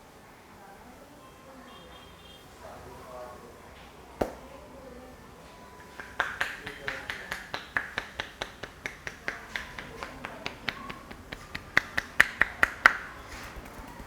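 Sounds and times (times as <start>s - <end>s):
hands snapping in head massage: 4.2s - 4.5s, 5.9s - 14.0s.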